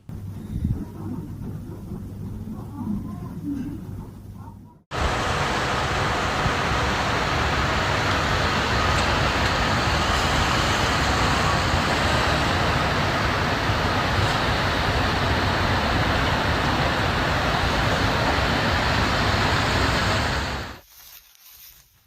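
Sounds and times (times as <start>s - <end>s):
loud steady rushing noise: 4.9s - 20.8s.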